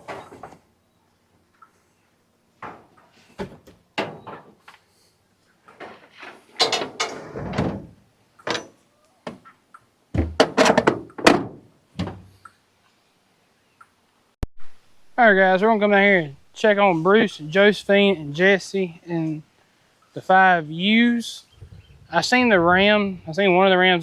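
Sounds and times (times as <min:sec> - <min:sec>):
feed containers thunking and clattering: 0:02.6 - 0:04.6, 0:05.7 - 0:09.4, 0:10.2 - 0:12.4
lid or door being handled: 0:10.2 - 0:12.3.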